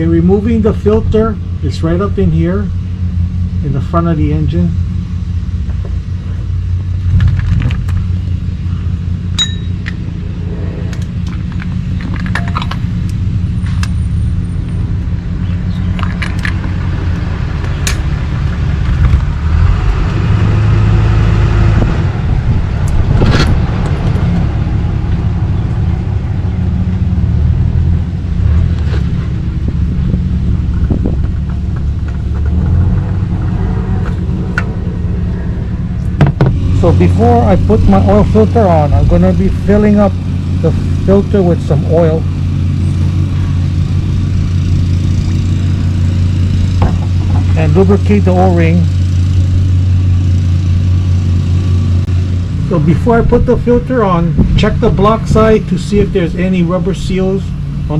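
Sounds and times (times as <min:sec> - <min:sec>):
steady low rumble: 0:00.0 - 0:57.9
metal wrench clinks and knocks: 0:09.4 - 0:10.0, 0:11.5 - 0:13.2.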